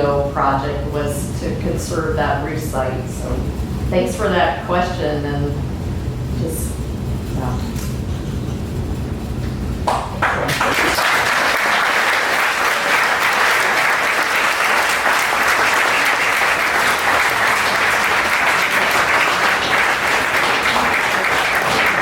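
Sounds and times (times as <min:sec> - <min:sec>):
audience applauding: 0:09.9 - 0:22.0.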